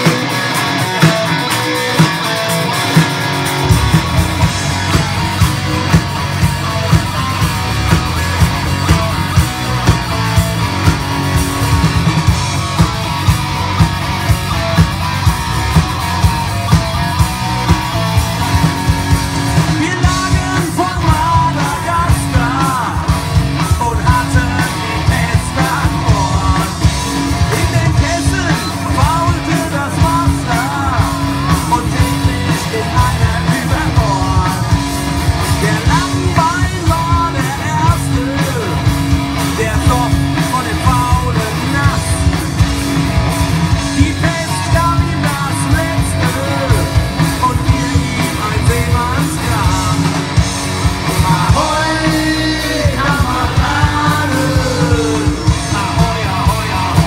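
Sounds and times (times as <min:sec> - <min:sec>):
rock band playing: 0:00.0 - 0:57.0
person singing: 0:51.1 - 0:57.0.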